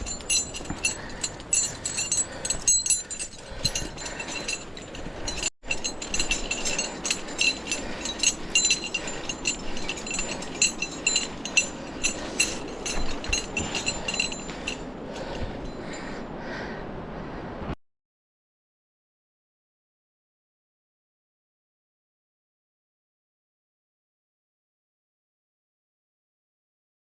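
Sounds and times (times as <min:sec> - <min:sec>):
metal climbing gear clinking: 0:00.0 - 0:16.3.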